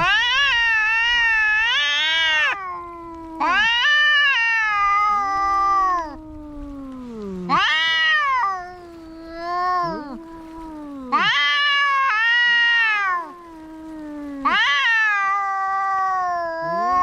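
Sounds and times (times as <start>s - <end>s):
cats yowling: 0.0s - 17.0s
low moaning cat yowl: 0.0s - 17.0s.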